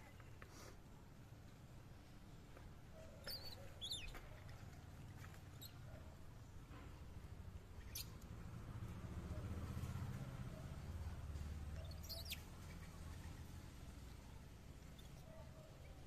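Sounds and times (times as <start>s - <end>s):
animal squeaks: 3.2s - 4.5s, 5.5s - 5.9s, 11.7s - 13.4s.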